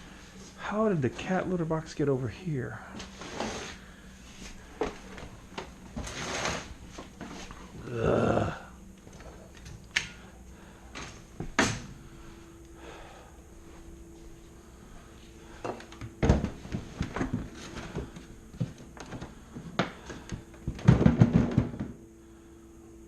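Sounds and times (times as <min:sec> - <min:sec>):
faint steady hum: 0:00.0 - 0:23.0
objects knocking and clunking: 0:15.6 - 0:22.0.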